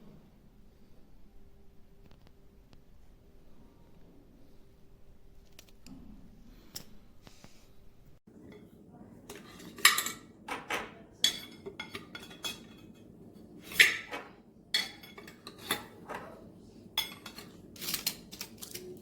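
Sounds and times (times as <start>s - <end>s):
hard objects clinking and clattering: 8.4s - 16.4s, 17.0s - 19.0s.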